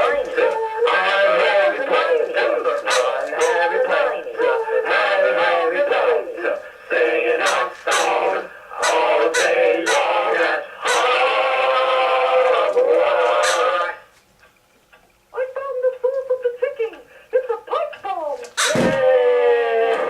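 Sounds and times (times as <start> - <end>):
voices singing a chant: 0.0 - 14.1.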